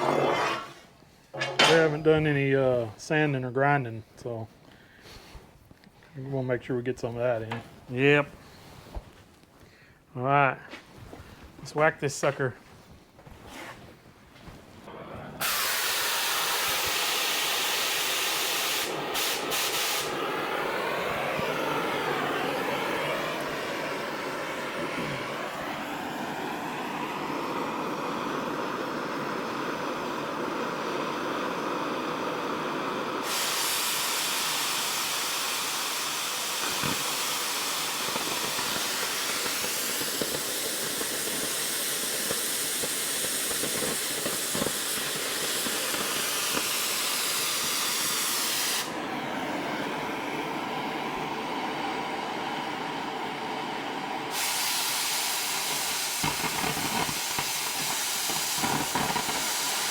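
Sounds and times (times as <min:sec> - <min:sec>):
cutting torch hissing: 0:00.0 - 0:05.6, 0:14.9 - 0:59.9
louder sharp hiss: 0:15.4 - 0:51.9, 0:54.2 - 0:59.9.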